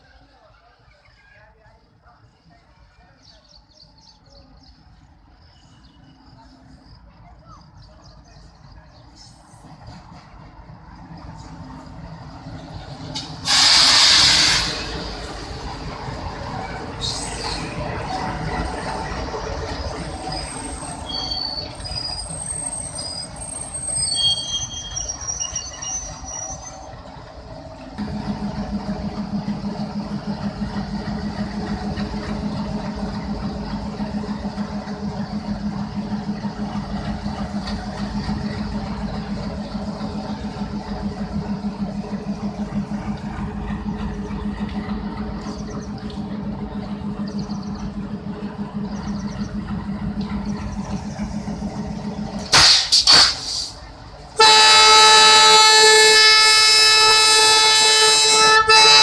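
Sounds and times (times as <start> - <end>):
diesel locomotive engines chugging: 0.0 - 59.0
train wheel squeals: 5.4 - 7.0, 13.1 - 15.4, 16.4 - 27.3.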